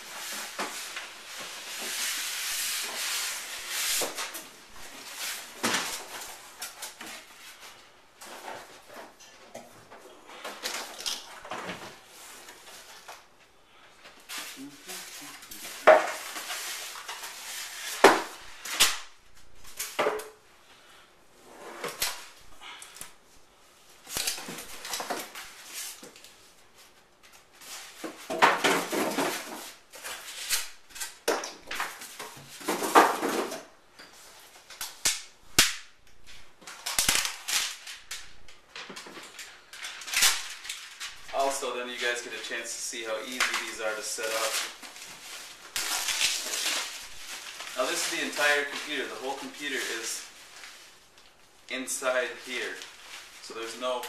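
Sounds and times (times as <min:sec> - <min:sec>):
packaging rustling and crinkling: 0:14.1 - 0:20.0, 0:36.2 - 0:54.0.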